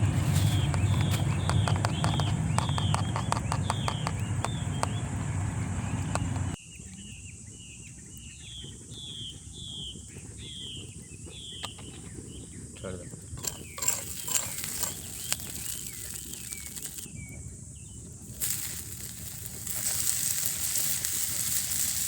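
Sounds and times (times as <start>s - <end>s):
low rumble with rapid clicks: 0.0s - 6.6s
bird chirping: 0.2s - 12.5s, 13.4s - 18.0s
insect-like hiss: 13.6s - 17.1s, 17.8s - 22.0s.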